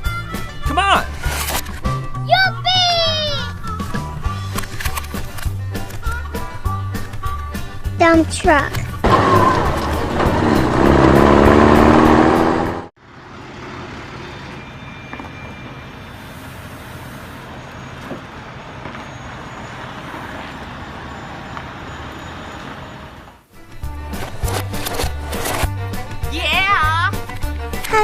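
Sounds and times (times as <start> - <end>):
truck engine running: 6.9 - 14.8.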